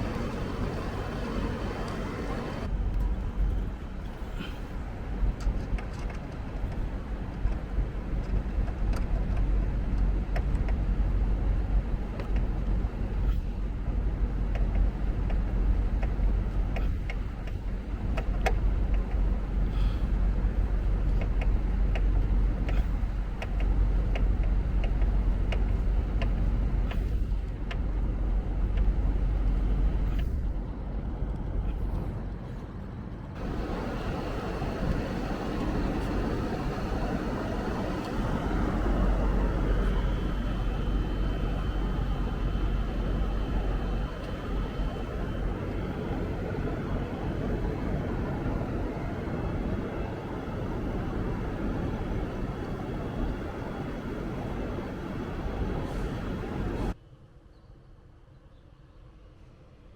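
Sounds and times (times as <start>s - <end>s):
air conditioner humming: 0.0s - 2.9s, 33.4s - 57.0s.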